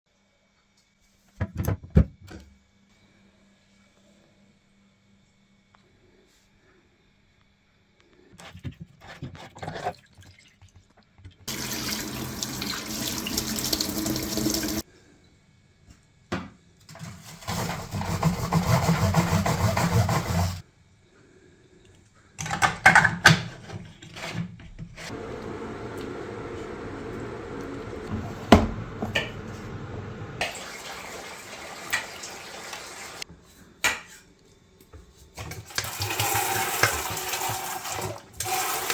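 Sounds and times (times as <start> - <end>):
water pouring: 9.6 - 14.8, 30.4 - 33.2, 35.6 - 38.9.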